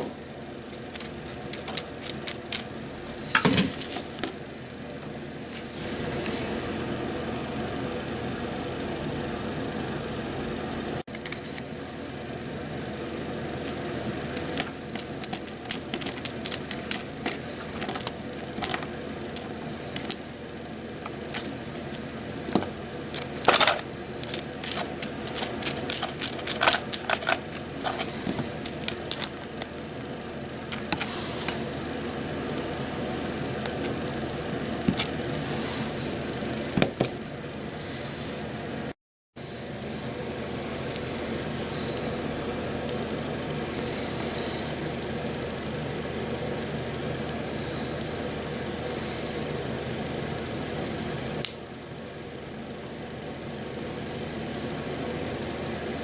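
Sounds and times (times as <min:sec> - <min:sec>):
steady background hum: 0:00.0 - 0:56.0
metal tools tapping and clicking: 0:22.5 - 0:29.7.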